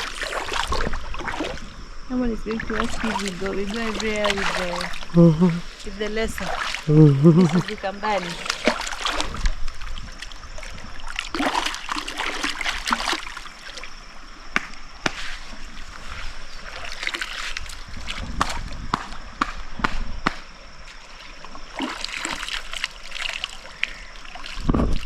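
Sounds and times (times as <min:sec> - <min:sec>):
short sharp splashes: 0:00.0 - 0:01.7, 0:02.6 - 0:09.6, 0:10.2 - 0:13.8, 0:21.7 - 0:25.0
river water running: 0:00.0 - 0:25.0.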